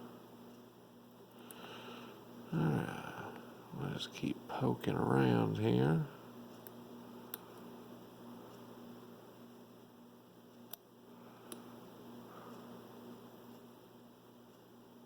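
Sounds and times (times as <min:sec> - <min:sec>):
faint hiss and hum: 0:00.0 - 0:15.0.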